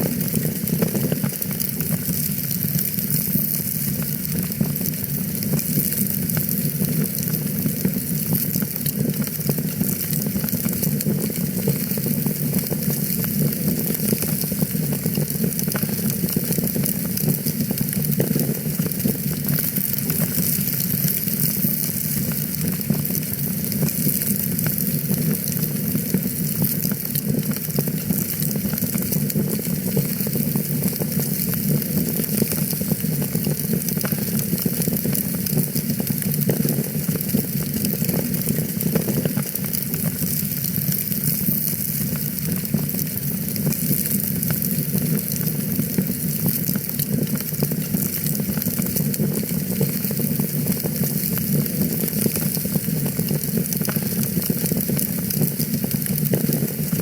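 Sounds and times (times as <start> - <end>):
wood fire crackling: 0.0 - 57.0.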